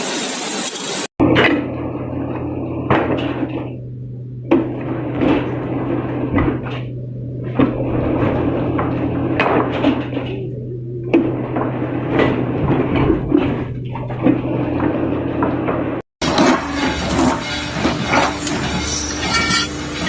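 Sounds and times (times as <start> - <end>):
machine humming: 0.0 - 20.0
metallic knocks and clatters: 17.1 - 20.0.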